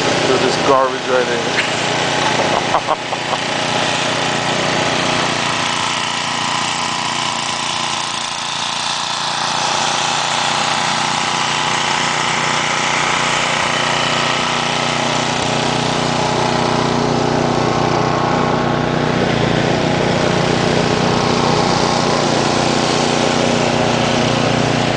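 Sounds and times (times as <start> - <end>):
engine running steadily: 0.0 - 24.9.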